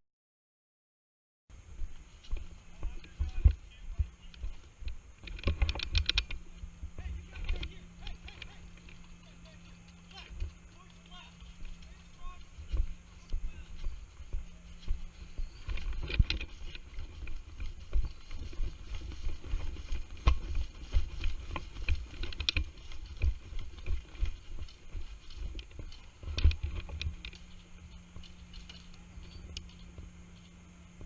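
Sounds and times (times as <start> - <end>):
footsteps: 1.6 - 31.0
gear knocking: 15.6 - 27.6.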